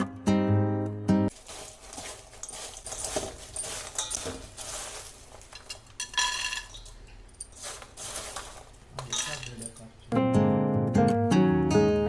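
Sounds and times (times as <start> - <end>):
utensils clinking and scraping cookware: 1.3 - 10.1.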